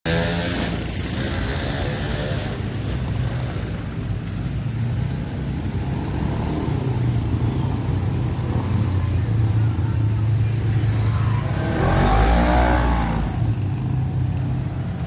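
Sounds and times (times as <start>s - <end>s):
traffic engines droning: 0.1s - 15.0s.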